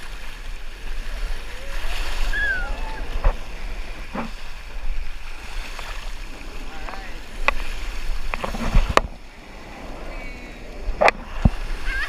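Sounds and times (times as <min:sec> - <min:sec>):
rushing water: 0:00.0 - 0:12.0
wind buffeting microphone: 0:00.0 - 0:12.0
distant voices calling: 0:01.1 - 0:12.0.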